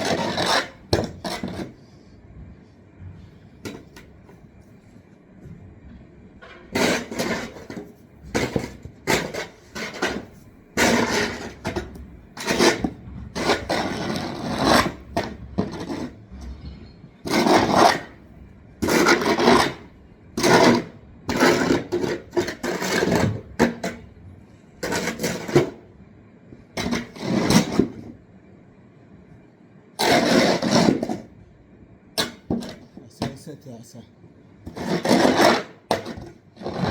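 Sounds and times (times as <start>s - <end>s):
gritty scraping strokes: 34.7s - 36.9s.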